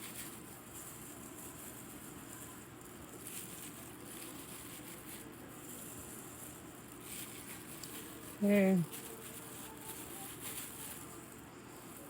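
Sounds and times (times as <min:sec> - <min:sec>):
soft handling noises: 0:00.0 - 0:12.0.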